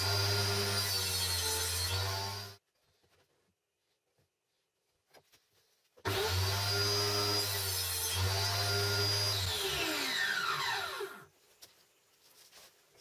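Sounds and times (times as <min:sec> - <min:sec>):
electric power tool running: 0:06.1 - 0:11.3.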